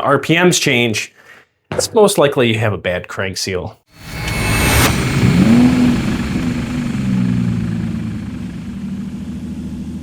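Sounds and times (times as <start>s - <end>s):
chainsaw engine idling high: 4.3s - 10.0s.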